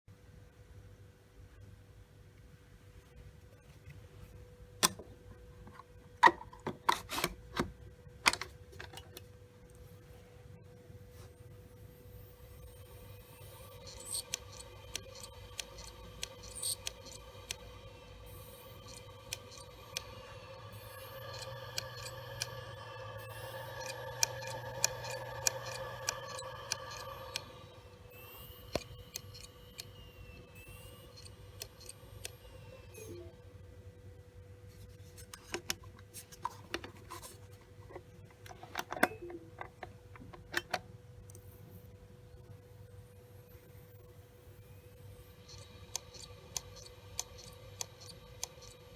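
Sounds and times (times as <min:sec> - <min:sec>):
faint steady hum: 0:00.1 - 0:48.9
hard drive heads clicking: 0:13.2 - 0:27.6, 0:45.3 - 0:48.9.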